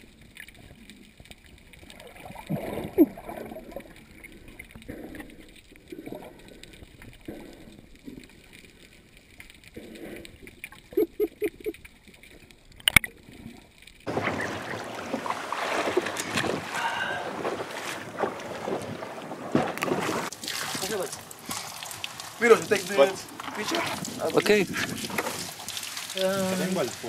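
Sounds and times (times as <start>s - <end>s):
wind: 0.0s - 27.0s
water lapping around a boat: 14.0s - 27.0s.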